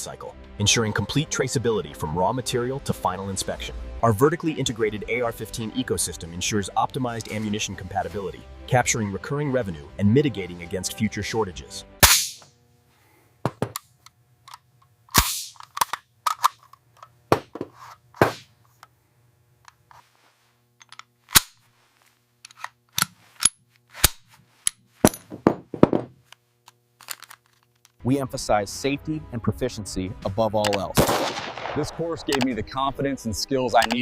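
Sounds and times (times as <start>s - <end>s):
rifle shots: 12.0s - 12.4s, 15.2s - 15.6s, 31.0s - 32.3s.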